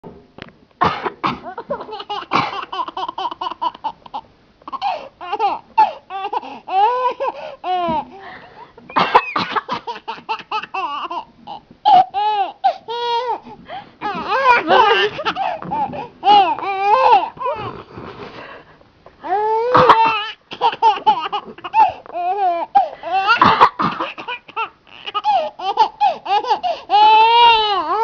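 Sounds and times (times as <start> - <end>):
woman fake coughing: 0.8 - 2.6, 8.9 - 9.9, 19.7 - 20.3, 23.3 - 24.4
baby laughing: 1.4 - 8.1, 8.9 - 13.4, 14.0 - 17.7, 19.6 - 28.0.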